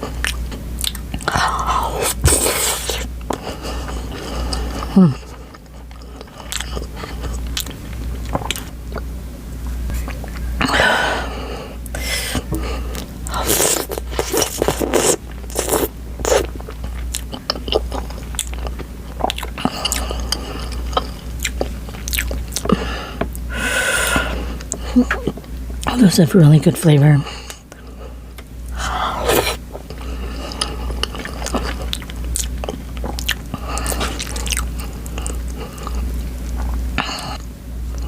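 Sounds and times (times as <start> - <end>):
biting crunching and chewing food: 0.0 - 9.1, 12.9 - 23.5, 29.2 - 38.0.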